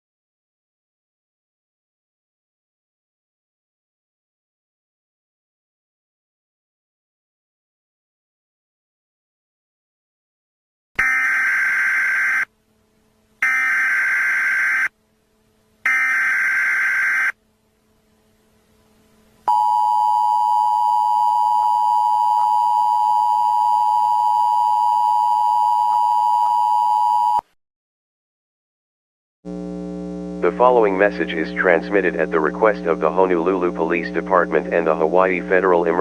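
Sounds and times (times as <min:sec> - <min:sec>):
steady two-tone attention signal: 0:19.5 - 0:27.4.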